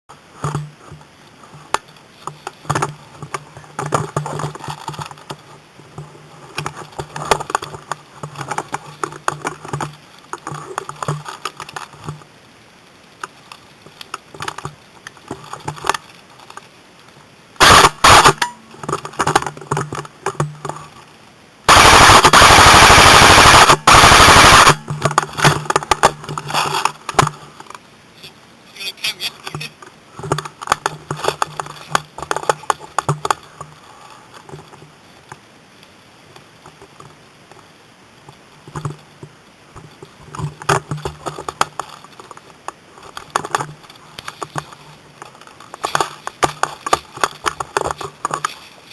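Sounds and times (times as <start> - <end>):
airsoft gun firing bursts: 17.6 - 18.5, 21.7 - 24.8.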